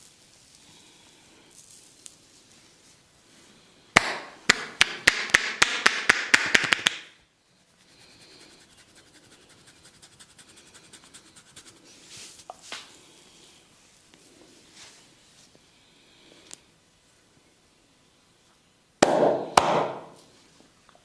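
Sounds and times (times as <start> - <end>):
hands slapping head: 4.0 - 7.1, 19.0 - 20.1.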